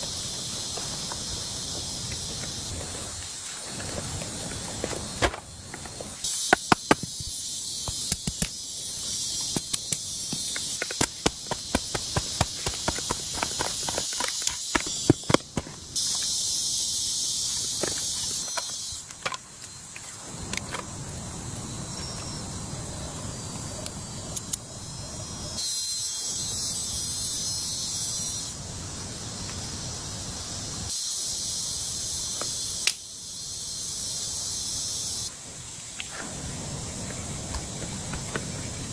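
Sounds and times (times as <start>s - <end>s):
high insect buzzing: 0.0s - 19.1s.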